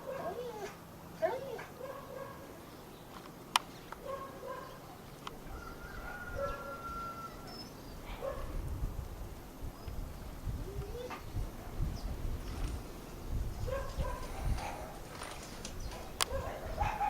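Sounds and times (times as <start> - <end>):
wind rumbling on microphone: 5.4 - 17.0.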